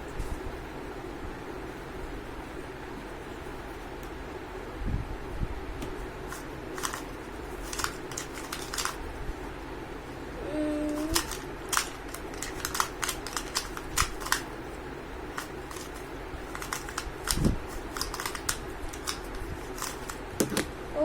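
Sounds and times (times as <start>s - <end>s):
puzzle cube plastic clicking: 6.3s - 9.0s, 10.9s - 14.5s, 15.3s - 20.2s.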